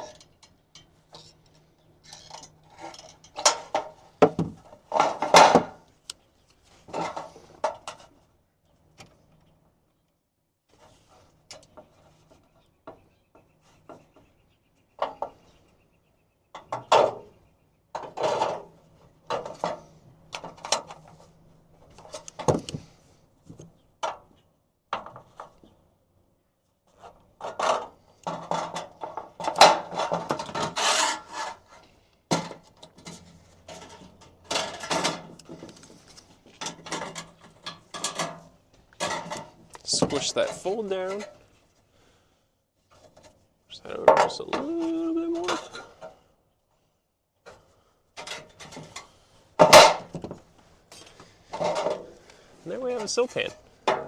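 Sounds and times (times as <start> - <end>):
aluminum sheet scraping and crinkling: 26.8 - 41.6.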